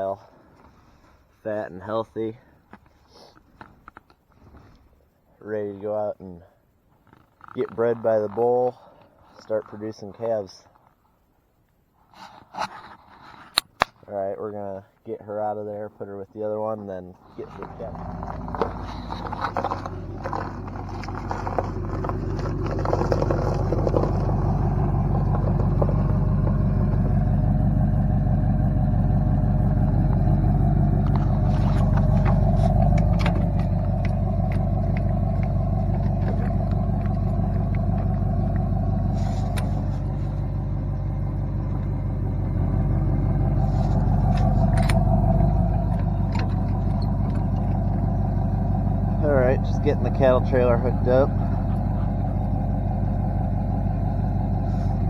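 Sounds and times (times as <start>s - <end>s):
truck engine running: 17.2s - 55.0s.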